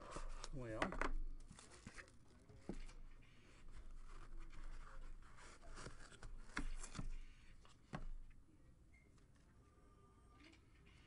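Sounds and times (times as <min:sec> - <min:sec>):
cardboard and wrapper rustle: 0:01.4 - 0:03.0, 0:03.6 - 0:07.2.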